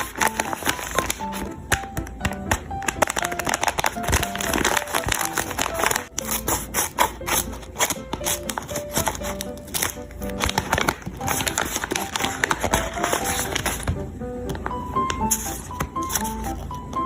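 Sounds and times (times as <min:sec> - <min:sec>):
paper crackling and crinkling: 0:00.0 - 0:14.0, 0:14.6 - 0:17.0
simple melody background music: 0:00.0 - 0:17.0.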